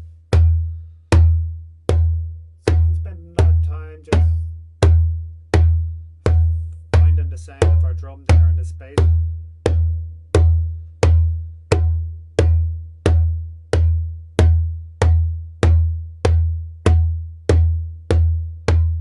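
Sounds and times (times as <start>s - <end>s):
djembe bass strokes: 0.0s - 19.0s.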